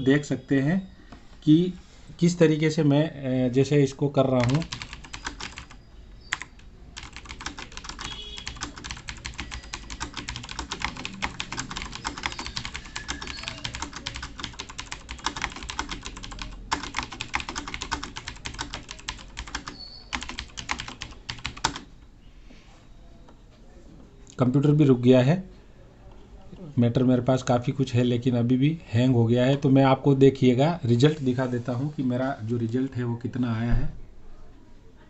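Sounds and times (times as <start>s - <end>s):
fast keyboard typing: 4.4s - 21.9s.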